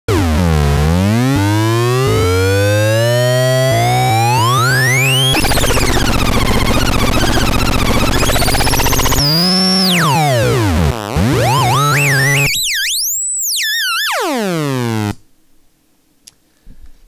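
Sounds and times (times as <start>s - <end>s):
warbling electronic tones: 4.3s - 15.2s.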